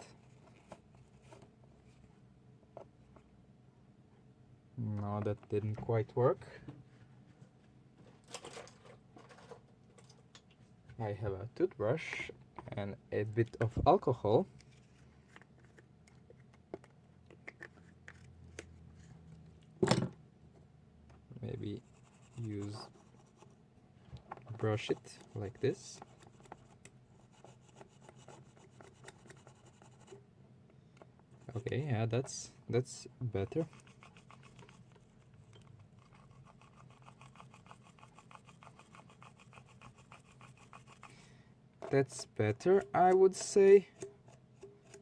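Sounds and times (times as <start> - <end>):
toothbrush scrubbing: 33.5 - 41.1.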